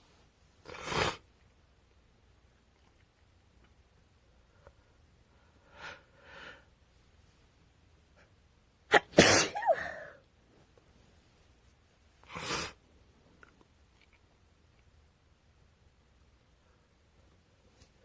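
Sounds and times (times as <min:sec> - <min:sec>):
woman sneezing: 0:08.9 - 0:10.2.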